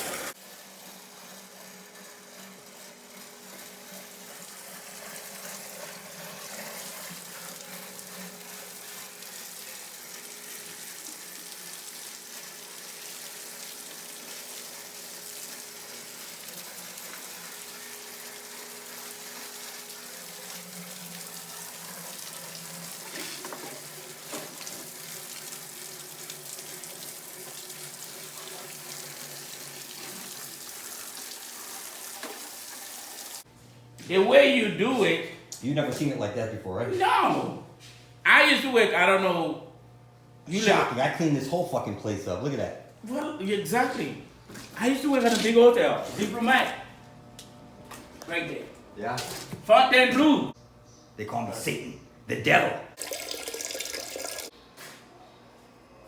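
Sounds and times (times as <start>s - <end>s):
water running: 0.0s - 33.5s, 40.4s - 50.6s, 52.4s - 54.5s.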